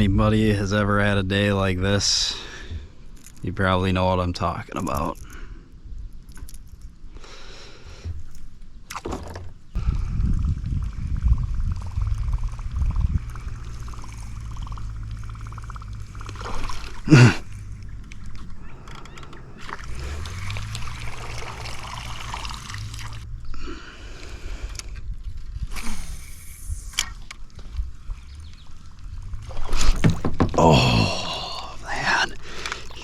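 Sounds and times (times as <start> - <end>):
water splashing and trickling: 8.3 - 23.3
low handling rumble: 9.8 - 25.6, 27.2 - 32.1.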